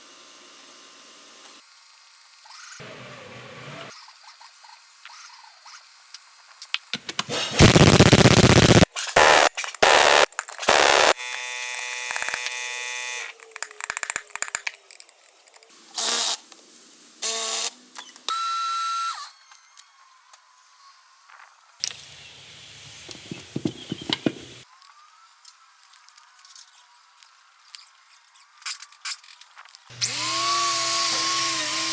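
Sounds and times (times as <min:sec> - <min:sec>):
power tool bursts: 0:07.5 - 0:13.4
power tool whirring: 0:07.6 - 0:13.7, 0:29.9 - 0:31.9.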